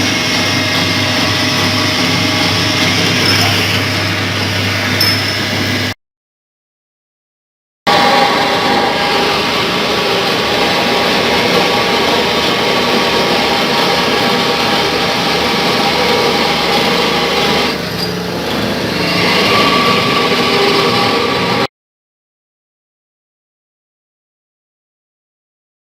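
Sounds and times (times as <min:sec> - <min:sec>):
small lathe whining: 0:00.0 - 0:05.9, 0:07.9 - 0:21.7.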